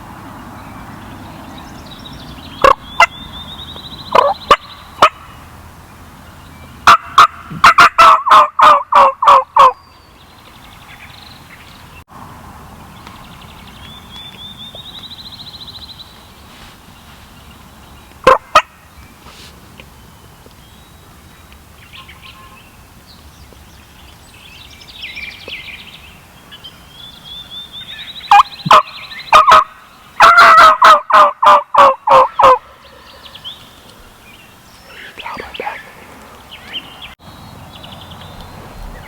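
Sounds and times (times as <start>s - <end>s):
wild turkeys calling: 2.6s - 5.4s, 6.8s - 9.8s, 18.2s - 18.8s, 27.8s - 34.1s, 34.8s - 37.2s
faint trilling calls: 34.7s - 37.2s.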